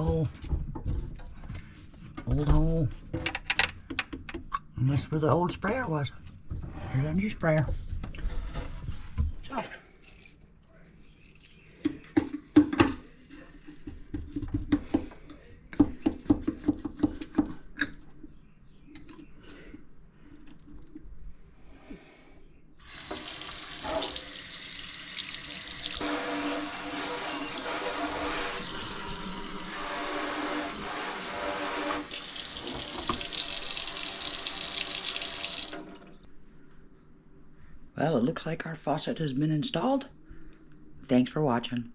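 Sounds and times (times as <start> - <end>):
water running into sink: 22.9 - 36.2.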